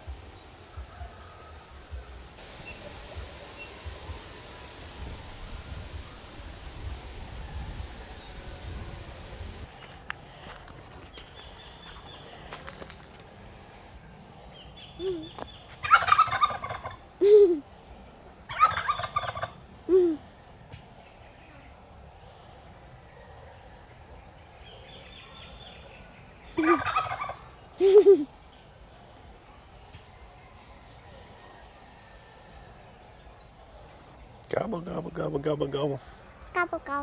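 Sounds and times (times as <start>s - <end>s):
turkeys gobbling: 2.4s - 9.7s, 15.0s - 17.5s, 18.5s - 20.1s, 26.6s - 28.1s
turkey single calls: 15.0s - 17.4s, 18.5s - 20.1s, 26.6s - 27.4s.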